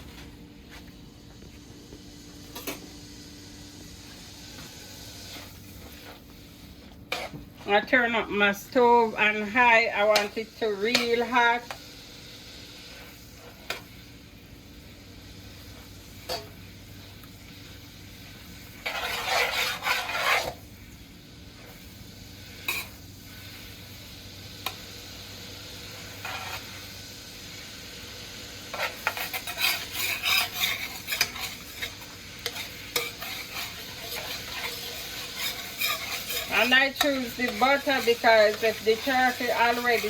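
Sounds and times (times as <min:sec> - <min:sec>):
spoon scraping a pot: 0:04.6 - 0:07.4, 0:10.1 - 0:11.8, 0:18.8 - 0:20.6, 0:22.6 - 0:23.0, 0:26.0 - 0:26.8, 0:28.7 - 0:40.0.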